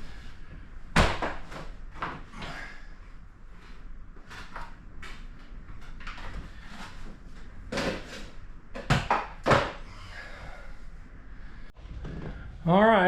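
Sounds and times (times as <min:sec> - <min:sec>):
objects knocking and clunking: 0:04.2 - 0:09.8.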